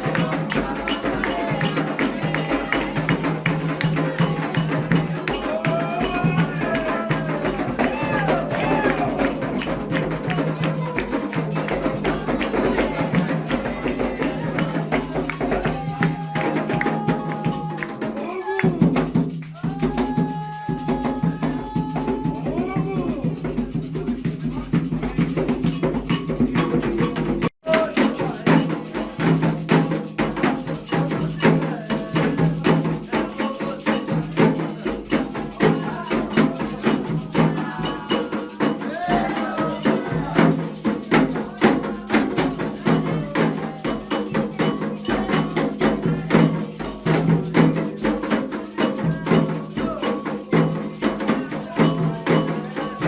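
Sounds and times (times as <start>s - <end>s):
bell pattern: 0.0s - 53.0s
fast hand drumming: 0.0s - 53.0s
voices singing: 0.0s - 53.0s.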